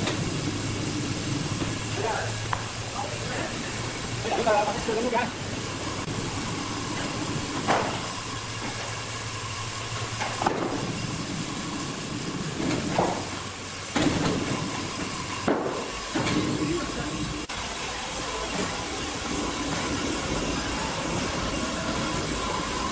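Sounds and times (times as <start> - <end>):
sawmill machinery hissing: 0.0 - 22.9.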